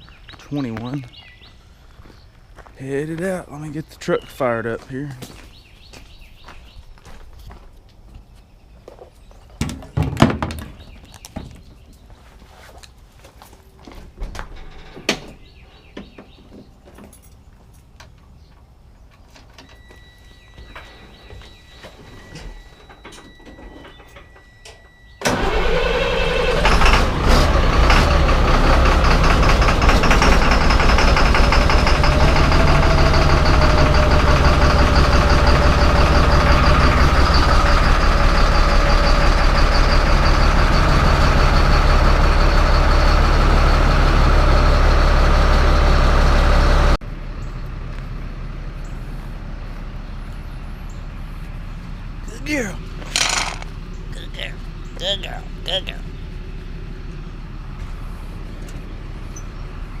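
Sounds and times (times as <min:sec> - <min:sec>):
truck engine starting and idling: 0:22.5 - 1:00.0.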